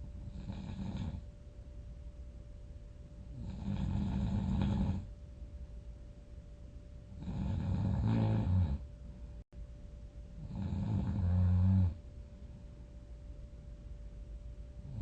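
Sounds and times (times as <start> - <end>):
person snoring loudly: 0.2 - 1.2, 3.3 - 5.1, 7.2 - 8.8, 10.4 - 12.0.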